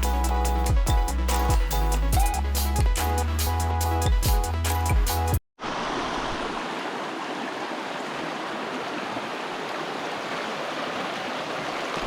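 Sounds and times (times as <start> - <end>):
creek water rushing: 5.6 - 12.0.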